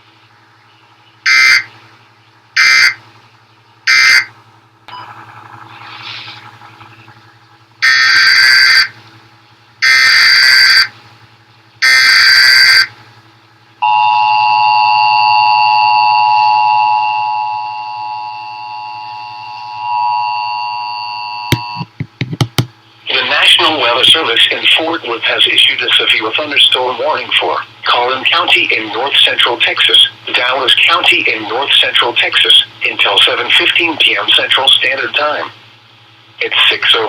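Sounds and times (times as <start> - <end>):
steady attention tone: 13.8 - 35.6.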